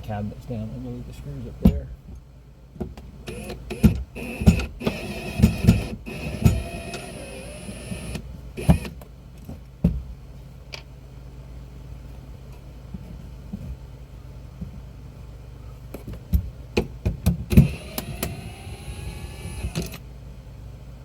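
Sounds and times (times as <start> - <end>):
low steady hum: 0.0 - 21.0
sharp knocks and clunks: 1.6 - 2.2, 3.7 - 6.7, 9.5 - 10.1
cordless drill whirring: 3.3 - 8.9, 17.5 - 20.0.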